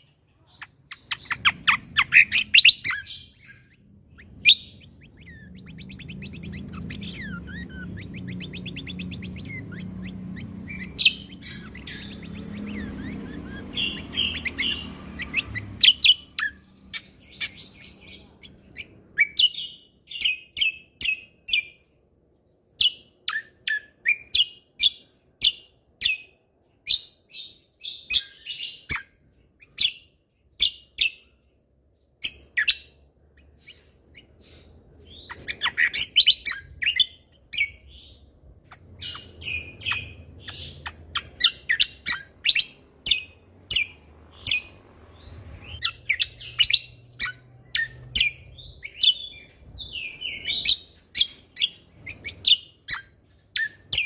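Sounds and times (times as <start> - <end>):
faint low hum: 0.0 - 19.3
songbird chirping and trilling: 0.0 - 54.0.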